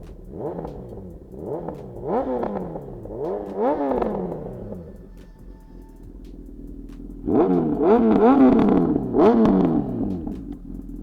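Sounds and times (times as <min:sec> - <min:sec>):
motorcycle engine idling: 0:00.0 - 0:11.0
motorcycle engine revving: 0:00.0 - 0:11.0.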